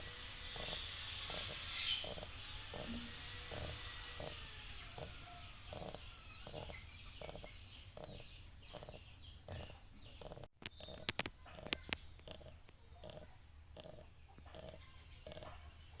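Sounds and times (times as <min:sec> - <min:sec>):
piglet faint breathing sounds: 0:00.5 - 0:16.0.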